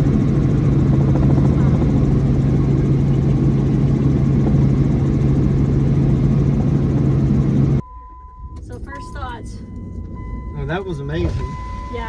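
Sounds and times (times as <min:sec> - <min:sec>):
helicopter drone: 0:00.0 - 0:07.8.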